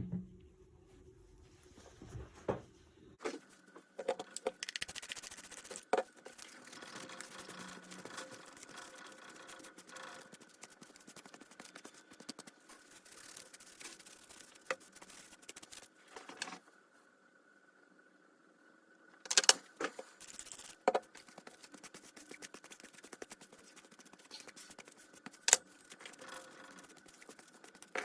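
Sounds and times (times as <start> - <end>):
scraping and scratching: 3.2 - 16.6, 19.3 - 28.0.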